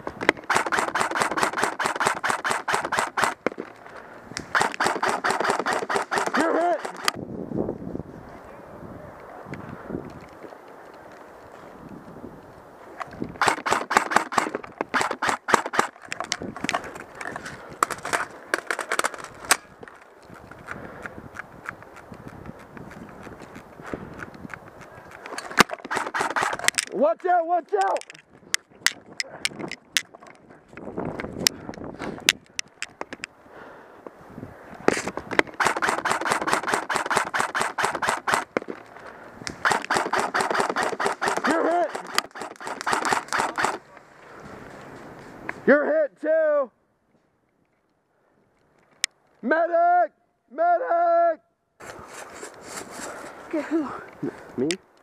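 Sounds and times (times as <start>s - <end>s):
airsoft guns firing: 0.3s - 3.6s, 4.5s - 7.2s, 13.4s - 16.0s, 25.5s - 26.9s, 35.6s - 38.6s, 39.6s - 43.8s.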